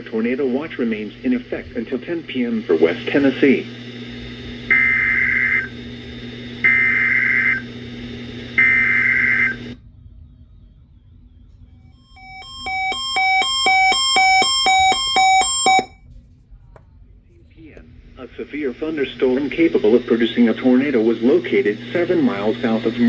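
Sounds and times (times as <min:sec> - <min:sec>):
steady hum: 0:00.0 - 0:16.0, 0:17.6 - 0:23.0
pulsing electronic alert tone: 0:12.1 - 0:15.9
buzzy digital data bursts: 0:12.2 - 0:15.9.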